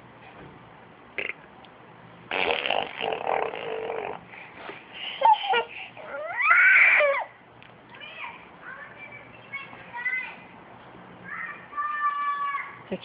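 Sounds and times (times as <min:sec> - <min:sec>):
child making buzzing noise: 0:02.3 - 0:04.2
child squealing: 0:05.2 - 0:07.4.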